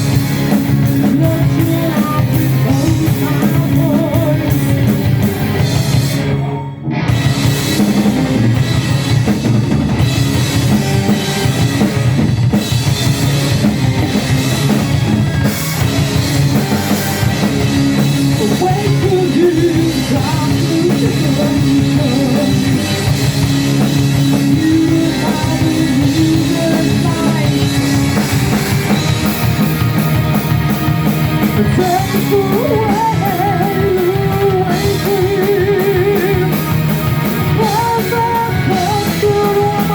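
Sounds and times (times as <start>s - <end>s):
heavy metal band playing live: 0.0s - 39.9s.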